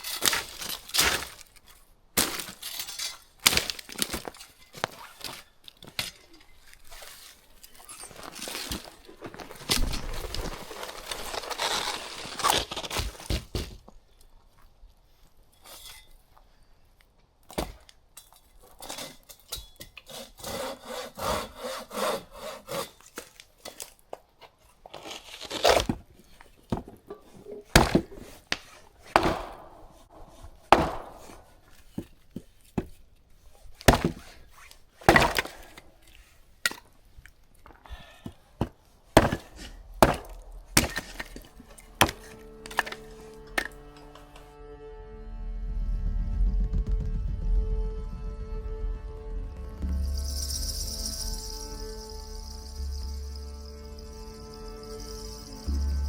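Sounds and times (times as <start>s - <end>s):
hand saw cutting wood: 20.0s - 23.8s, 39.2s - 44.4s
wood cracking and knocking: 29.1s - 33.0s, 38.6s - 43.8s.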